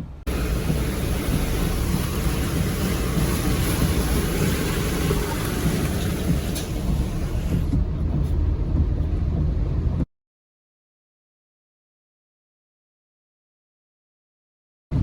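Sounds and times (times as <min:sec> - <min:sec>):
road and engine rumble: 0:00.0 - 0:10.1
rain hissing: 0:00.3 - 0:07.8.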